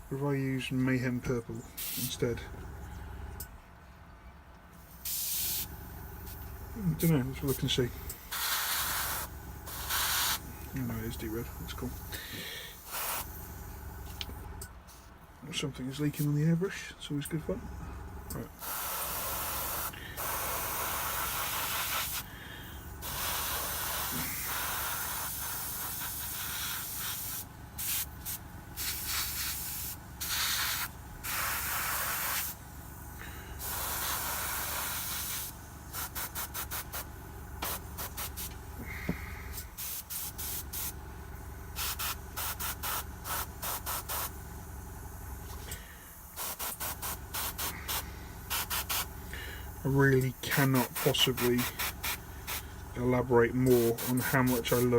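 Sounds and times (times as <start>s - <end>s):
steady low hum: 0.0s - 54.9s
airbrush spraying hiss: 1.8s - 2.2s, 4.9s - 13.5s, 18.6s - 22.3s, 23.0s - 33.0s, 33.6s - 38.6s, 39.5s - 41.0s, 41.8s - 44.3s, 46.2s - 49.2s, 50.5s - 52.9s, 53.5s - 54.9s.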